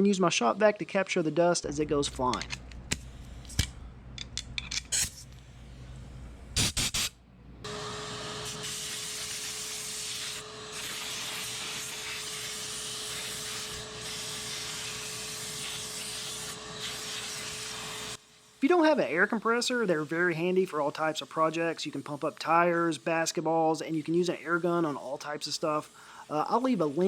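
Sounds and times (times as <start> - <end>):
shop vac humming: 1.6 - 27.0
compressed air blow gun hissing: 8.3 - 18.8, 23.9 - 27.0.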